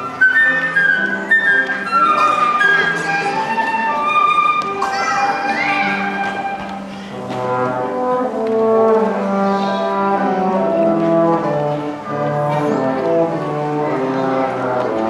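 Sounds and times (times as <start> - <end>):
brass instruments playing chords: 5.5 - 15.0.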